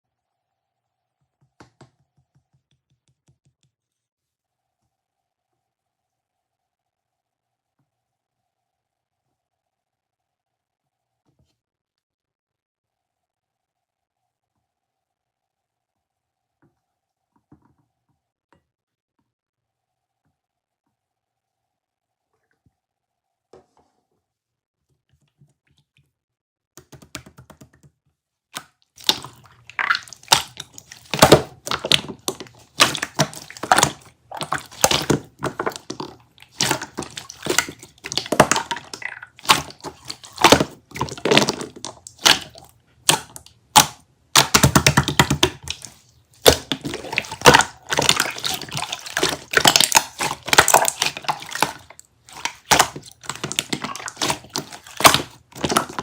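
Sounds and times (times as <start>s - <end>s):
jelly squelching and popping: 28.6s - 56.0s.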